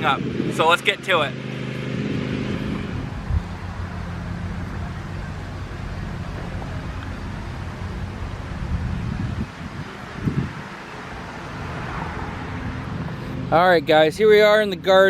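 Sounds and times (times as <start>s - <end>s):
wind noise on microphone: 0.0s - 0.9s, 1.8s - 4.8s, 7.8s - 11.3s
engine running steadily: 0.0s - 15.0s.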